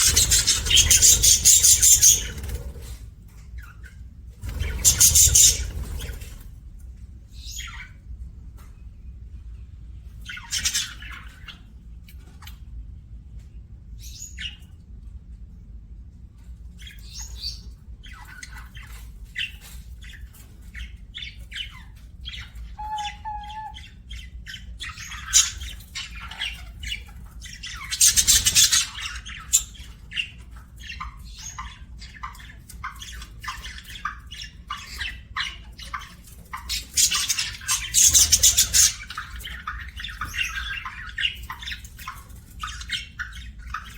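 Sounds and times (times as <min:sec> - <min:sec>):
budgerigars chirping: 0:00.0 - 0:02.9, 0:03.6 - 0:06.4, 0:07.3 - 0:08.0, 0:10.2 - 0:11.6, 0:16.8 - 0:43.9
harsh squawks: 0:22.7 - 0:24.0.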